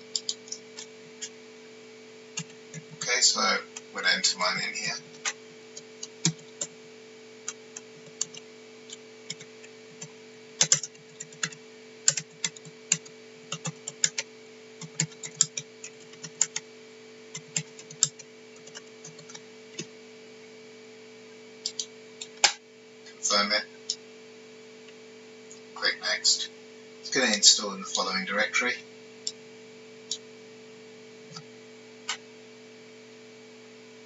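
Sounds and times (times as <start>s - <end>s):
low electrical hum: 0.0s - 34.0s
typing on a computer keyboard: 0.1s - 0.6s, 6.0s - 6.7s, 7.5s - 8.4s, 10.6s - 16.6s, 17.3s - 19.9s, 21.7s - 22.4s.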